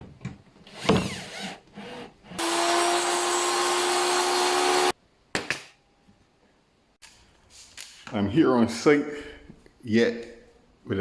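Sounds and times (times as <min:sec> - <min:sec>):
power tool humming: 0:01.3 - 0:04.9.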